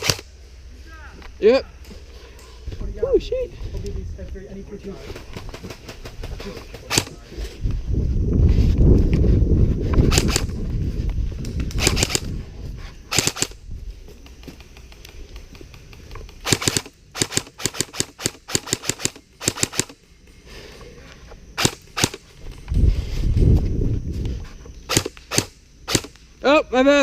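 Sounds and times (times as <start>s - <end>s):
airsoft gun shots: 0.0s - 0.2s, 13.1s - 13.6s, 16.4s - 20.0s, 21.6s - 22.2s, 24.9s - 26.2s
wind rumble on microphone: 2.6s - 14.2s, 22.3s - 24.8s.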